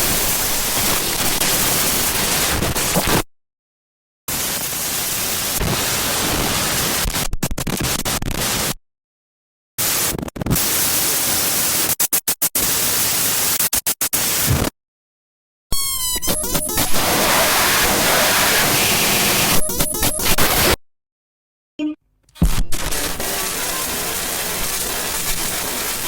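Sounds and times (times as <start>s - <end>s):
digital glitch static bursts: 15.8s - 20.8s, 22.4s - 26.0s.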